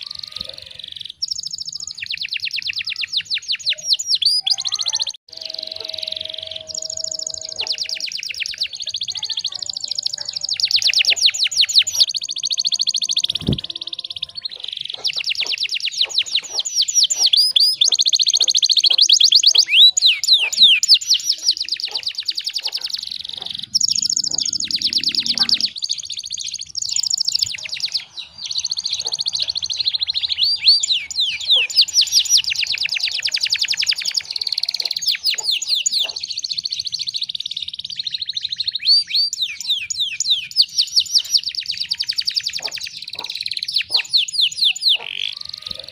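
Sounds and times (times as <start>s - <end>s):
canary singing trills: 0.0s - 45.9s.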